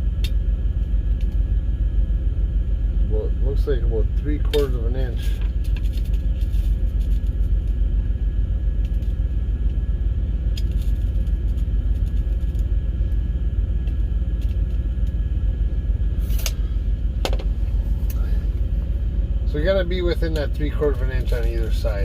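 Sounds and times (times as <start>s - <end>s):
truck engine idling: 0.0s - 22.0s.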